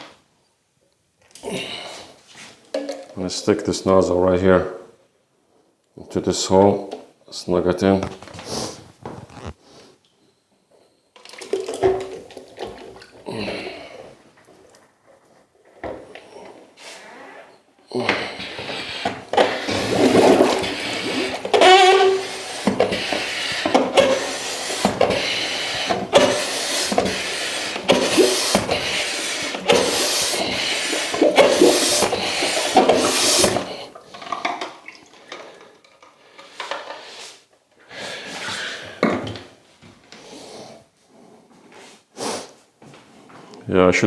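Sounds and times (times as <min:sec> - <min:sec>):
handling sounds: 0:07.8 - 0:09.6
water churning and splashing in toilet: 0:11.2 - 0:14.8, 0:17.9 - 0:36.8.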